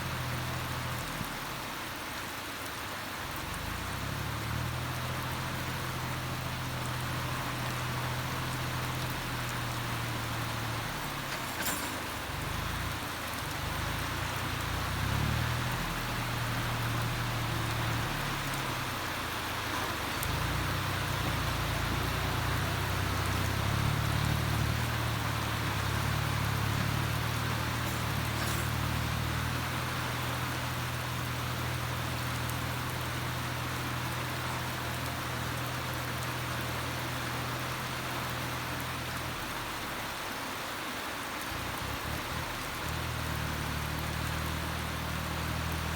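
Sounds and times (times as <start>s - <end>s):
heavy rain hissing: 0.0s - 45.9s
farm machine engine running: 23.6s - 30.9s.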